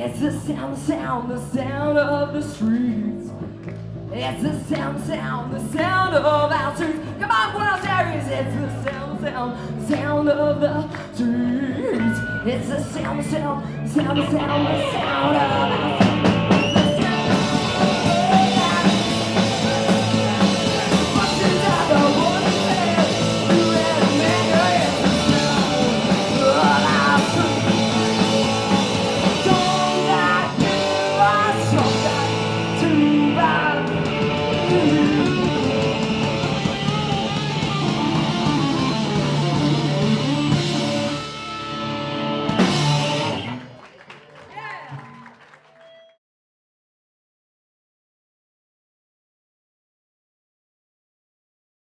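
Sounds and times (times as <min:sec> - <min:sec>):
punk rock band playing: 0:14.0 - 0:43.6.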